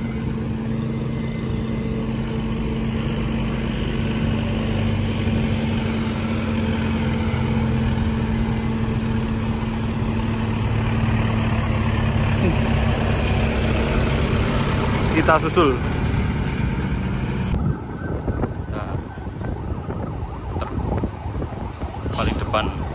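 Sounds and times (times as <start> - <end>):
heavy vehicle engine under load: 0.0 - 17.6.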